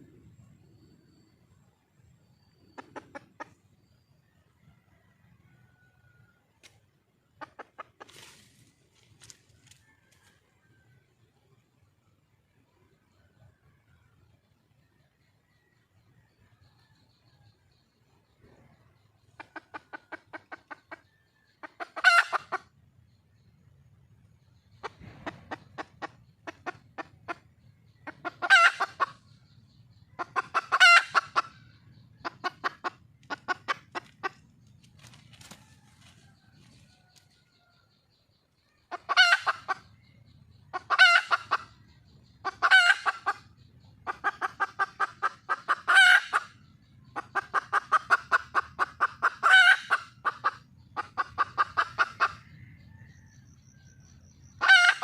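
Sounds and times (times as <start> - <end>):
hen clucking: 2.6 - 3.8, 6.6 - 10.3, 17.2 - 23.2, 24.5 - 55.0.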